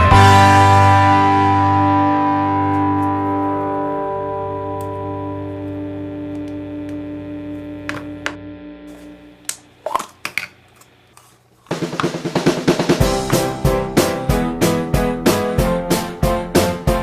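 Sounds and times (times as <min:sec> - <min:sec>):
drums and keyboard track: 0:00.0 - 0:03.5, 0:11.7 - 0:17.0
held music chord: 0:00.0 - 0:09.3, 0:13.0 - 0:17.0.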